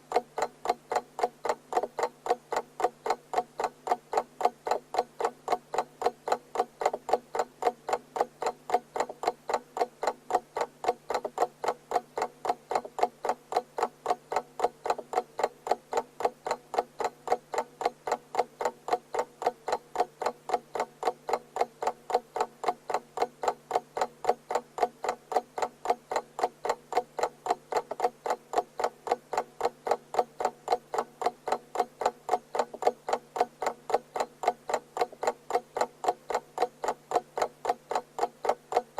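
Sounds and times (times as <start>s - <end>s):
alarm clock ticking: 0.1s - 38.9s.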